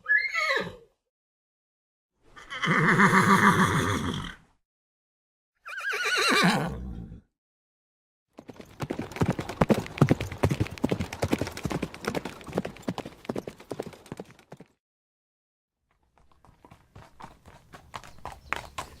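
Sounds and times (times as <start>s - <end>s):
horse whinny: 0.0s - 0.9s, 2.4s - 4.4s, 5.6s - 7.3s
horse hooves clip-clopping: 8.4s - 14.7s, 15.9s - 19.0s.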